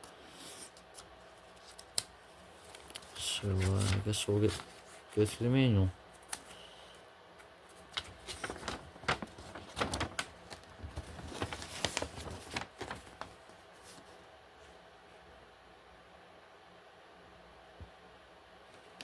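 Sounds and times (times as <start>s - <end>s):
paper rustling and crinkling: 0.4s - 6.6s, 7.6s - 14.3s.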